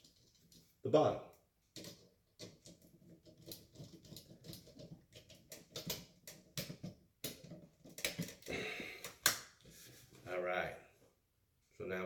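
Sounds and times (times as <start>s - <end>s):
small clicks and scrapes of wires: 0.0s - 0.8s, 1.6s - 9.9s.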